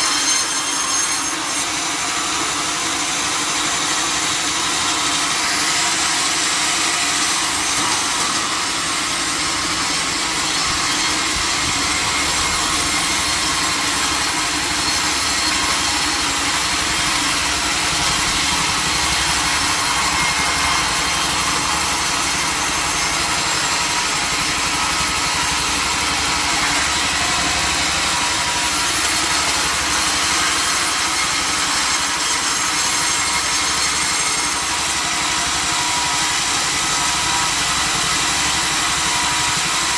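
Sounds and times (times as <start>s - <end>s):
sawmill saw cutting timber: 0.0s - 39.9s.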